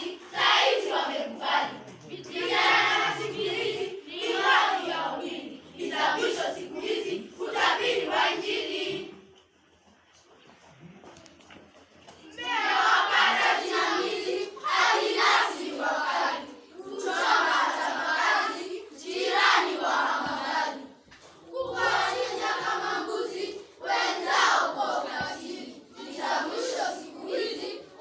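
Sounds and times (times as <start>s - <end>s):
children chanting in unison: 0.0s - 9.2s, 12.4s - 28.0s.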